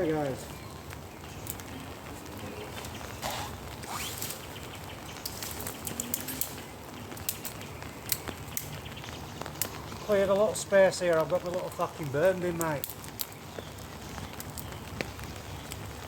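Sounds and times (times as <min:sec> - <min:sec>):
drops ticking and pattering: 0:00.0 - 0:16.0
steady rain: 0:00.0 - 0:16.0.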